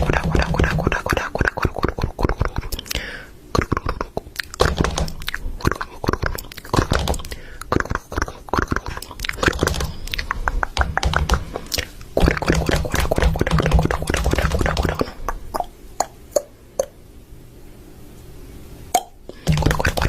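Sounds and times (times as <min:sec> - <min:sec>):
crunchy chewing: 0:03.6 - 0:15.7.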